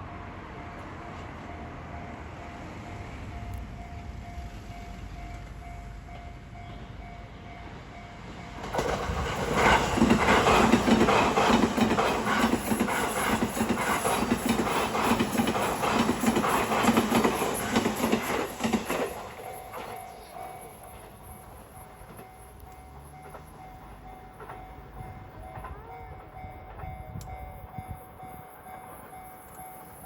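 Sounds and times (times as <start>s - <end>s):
level crossing warning bell: 0.1s - 30.0s
train wheels clattering over rail joints: 8.3s - 30.0s.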